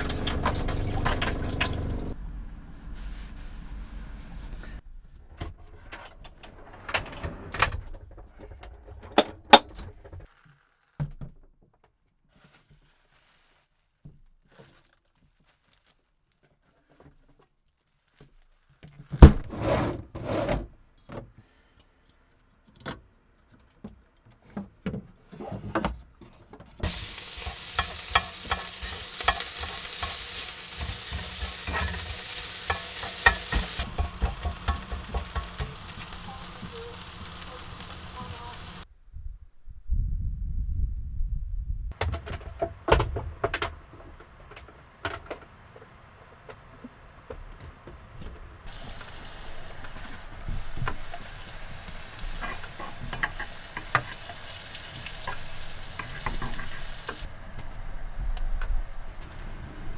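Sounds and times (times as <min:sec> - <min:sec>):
food sizzling in a pan: 0:00.0 - 0:02.2, 0:26.8 - 0:38.9, 0:48.7 - 0:57.3
kitchen utensils clicking: 0:00.0 - 0:02.2, 0:26.8 - 0:38.8, 0:48.7 - 0:57.3
utensils clattering: 0:00.0 - 0:02.2, 0:26.8 - 0:38.8, 0:48.7 - 0:57.3.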